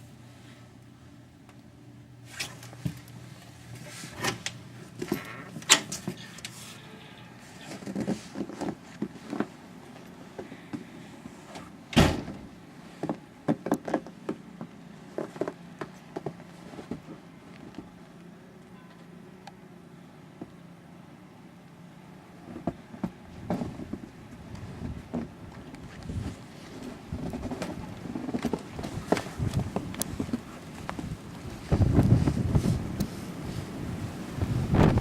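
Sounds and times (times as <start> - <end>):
door thump: 12.0 - 12.5.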